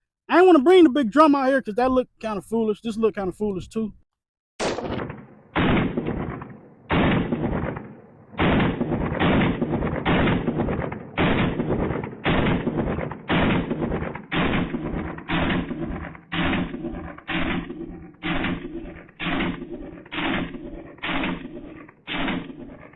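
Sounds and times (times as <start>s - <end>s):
pistol shots ringing: 4.6s - 22.9s.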